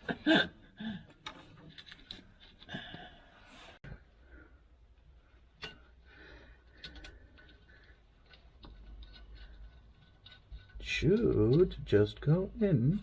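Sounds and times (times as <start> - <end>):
person laughing: 0.0 - 1.1.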